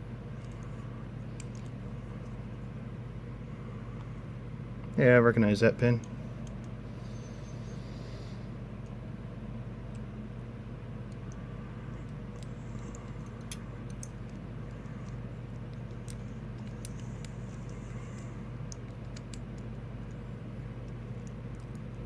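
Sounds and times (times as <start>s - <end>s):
low background hum: 0.0s - 22.0s
faint sharp clicks of lock pins: 12.3s - 14.4s.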